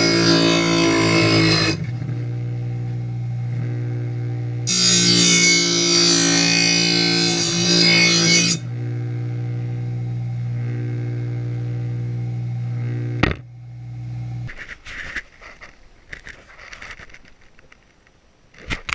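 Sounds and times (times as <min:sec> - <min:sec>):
grinding wheel scraping steel: 0:00.0 - 0:02.5, 0:04.6 - 0:08.7
grinder motor humming: 0:00.0 - 0:14.5.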